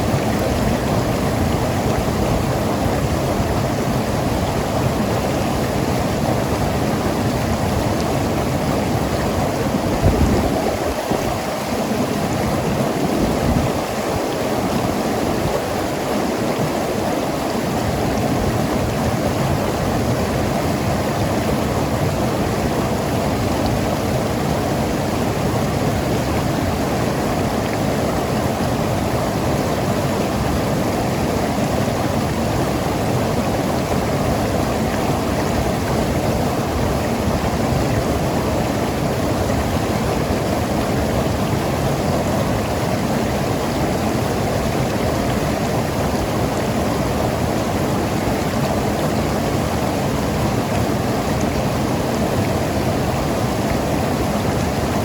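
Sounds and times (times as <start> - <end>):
river water over rocks: 0.0 - 55.0.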